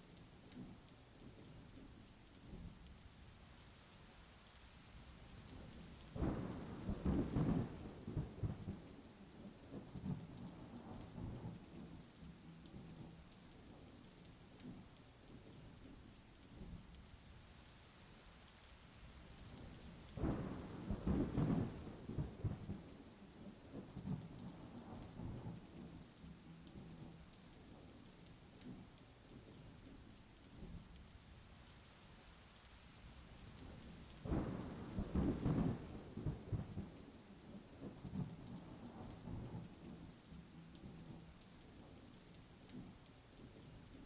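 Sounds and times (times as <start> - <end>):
steady rain: 0.0 - 44.0
thunder rumbling: 5.7 - 8.9, 19.5 - 23.0, 33.6 - 37.1.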